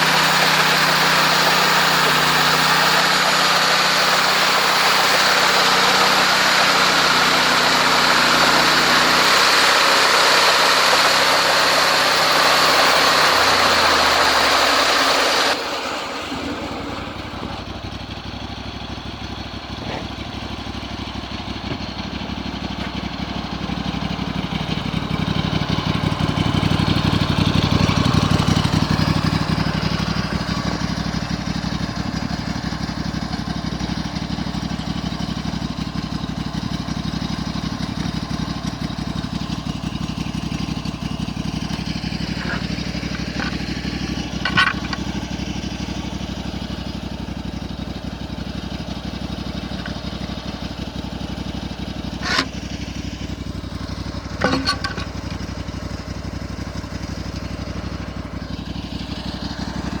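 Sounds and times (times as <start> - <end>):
sawmill engine running: 0.0 - 60.0
sharp metal clanks: 42.2 - 45.2, 52.1 - 52.9, 54.2 - 55.6.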